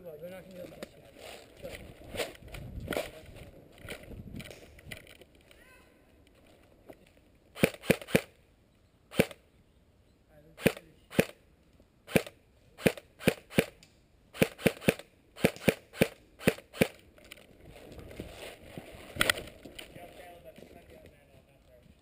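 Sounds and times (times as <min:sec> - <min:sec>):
airsoft gun shots: 0:07.6 - 0:08.3, 0:09.1 - 0:09.4, 0:10.6 - 0:11.4, 0:12.1 - 0:13.8, 0:14.4 - 0:17.0.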